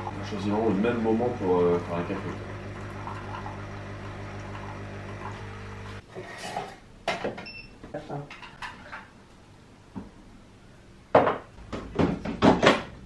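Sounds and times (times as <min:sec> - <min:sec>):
coffee machine humming: 0:00.0 - 0:06.0.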